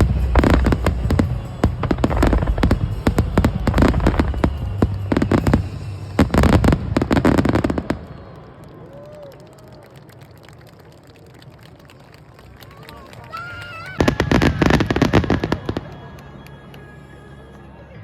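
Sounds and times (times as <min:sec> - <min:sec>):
low rumble: 0:00.0 - 0:07.2
fireworks crackling and banging: 0:00.0 - 0:09.3, 0:12.4 - 0:16.8.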